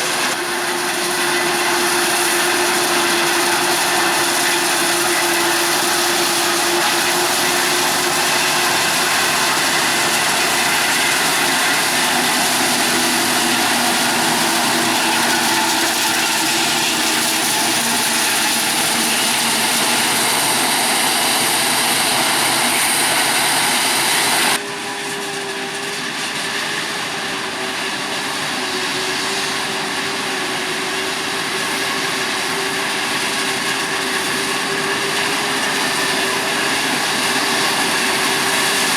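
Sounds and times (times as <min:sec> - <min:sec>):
machine hum: 0:00.0 - 0:24.6
forage harvester engine and chopper: 0:00.0 - 0:38.9.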